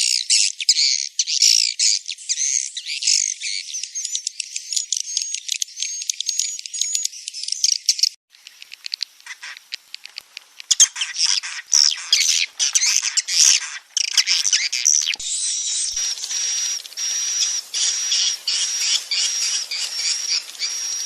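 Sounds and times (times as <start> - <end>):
swiftlet twittering: 11.8 - 21.0.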